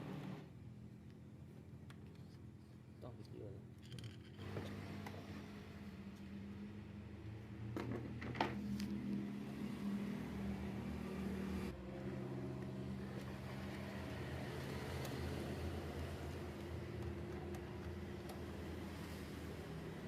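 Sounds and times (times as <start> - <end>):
low mechanical hum: 0.0 - 20.0.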